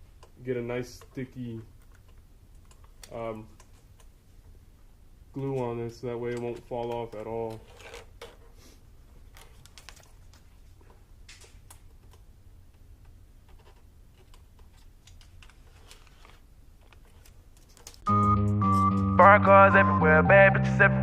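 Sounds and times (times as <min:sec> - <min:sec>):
small plastic parts clicking: 0:05.4 - 0:08.4, 0:11.2 - 0:18.1.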